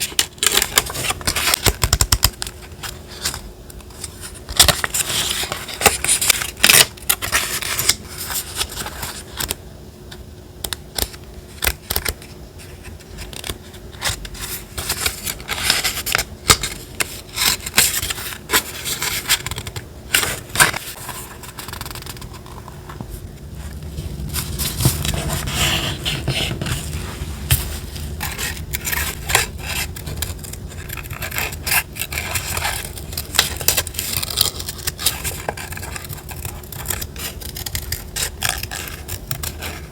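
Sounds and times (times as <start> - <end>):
paper rustling and scraping: 4.0 - 9.5, 12.0 - 39.9
paper crinkles: 12.7 - 39.9
low rumble: 23.2 - 29.4.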